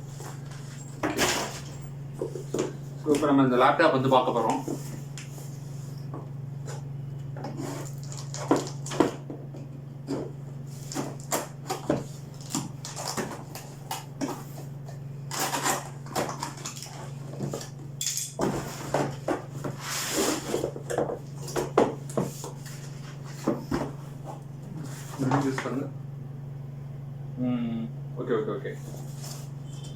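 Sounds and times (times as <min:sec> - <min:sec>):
steady low hum: 0:00.0 - 0:29.9
box packaging crinkling rustles: 0:07.7 - 0:09.0.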